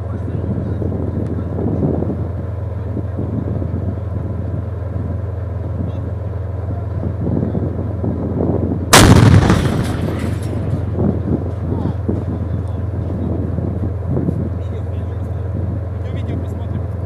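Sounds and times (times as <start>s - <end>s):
low rumble: 8.8s - 14.3s
loud blast: 8.9s - 11.0s.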